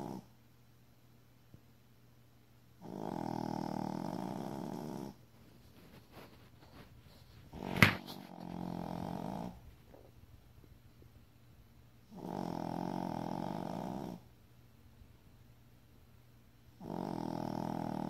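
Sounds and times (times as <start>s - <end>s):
pet snoring: 0.0s - 0.3s, 2.8s - 5.2s, 7.5s - 10.1s, 12.1s - 14.3s, 16.8s - 18.0s.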